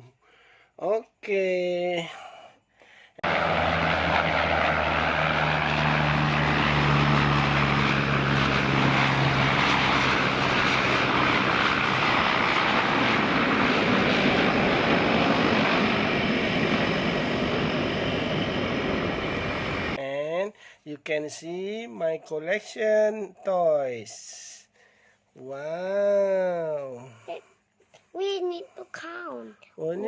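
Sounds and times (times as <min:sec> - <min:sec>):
low drone: 0:03.2 - 0:20.0
propeller aircraft engine running: 0:03.2 - 0:20.0.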